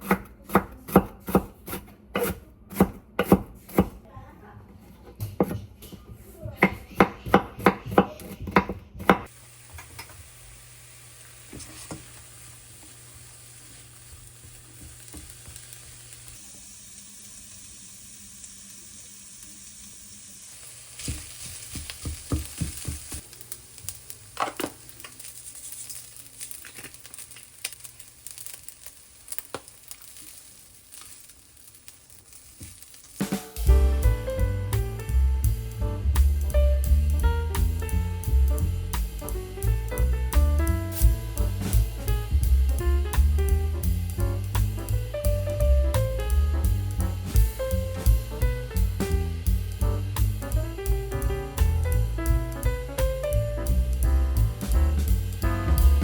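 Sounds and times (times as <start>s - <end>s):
knife chopping on cutting board: 0.0s - 4.0s, 5.1s - 6.0s, 6.6s - 9.3s
food sizzling in frying pan: 9.2s - 56.0s
utensil stirring and knocking in pan: 10.9s - 16.4s, 20.4s - 56.0s.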